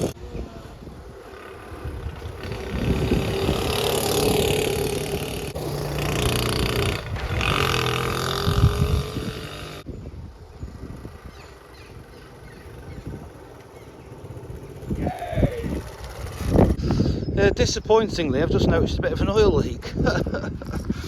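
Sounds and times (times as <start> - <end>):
wind noise: 0.0 - 21.0
motorcycle engine running: 1.4 - 9.9, 10.5 - 16.8.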